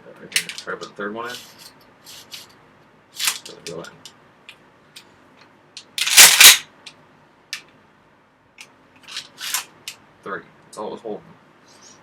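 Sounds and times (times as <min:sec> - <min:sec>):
shotgun handling clicks and rattles: 0:00.4 - 0:00.9, 0:05.8 - 0:07.0, 0:08.6 - 0:10.0.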